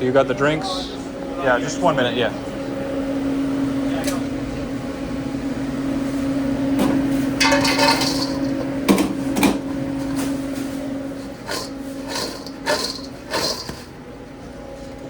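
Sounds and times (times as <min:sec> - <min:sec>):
equipment hum: 0:00.0 - 0:15.0
scraping clatter: 0:07.4 - 0:14.0.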